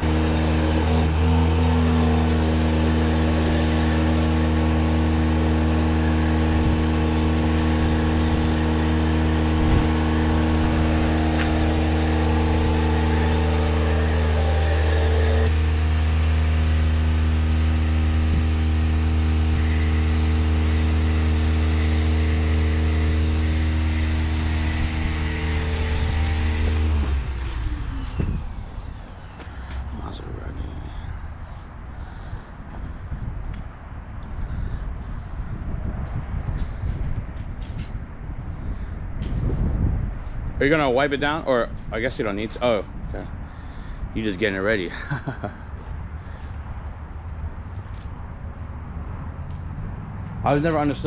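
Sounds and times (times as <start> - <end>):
pressure washer motor hum: 0.0 - 29.8.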